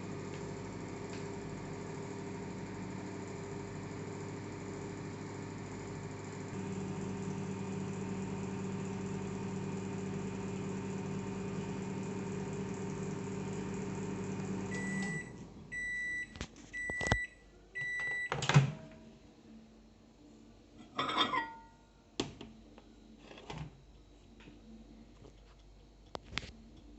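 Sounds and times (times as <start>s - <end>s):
microwave oven humming: 0.0s - 17.0s
microwave beeps: 0.8s - 18.6s.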